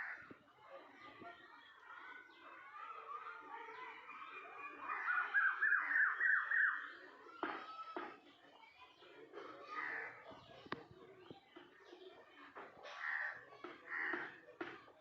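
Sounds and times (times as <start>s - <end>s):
cuckoo calling: 4.3s - 7.0s.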